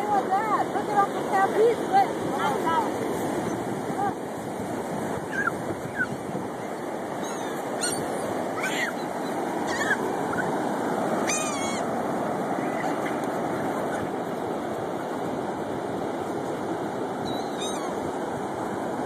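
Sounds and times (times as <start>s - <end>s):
ocean surf: 0.0s - 19.0s
gull cries: 5.3s - 6.2s, 7.2s - 10.6s, 11.2s - 12.0s, 17.2s - 18.0s.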